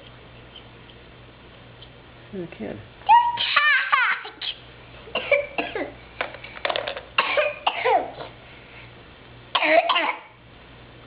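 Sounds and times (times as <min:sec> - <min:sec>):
child squealing: 0:03.1 - 0:04.6.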